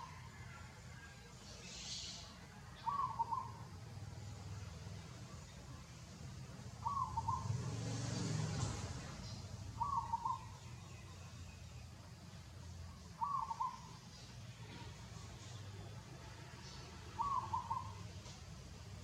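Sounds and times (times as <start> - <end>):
bird calling: 1.6 - 3.8, 6.8 - 7.8, 9.2 - 11.1, 12.9 - 14.8, 17.1 - 18.3.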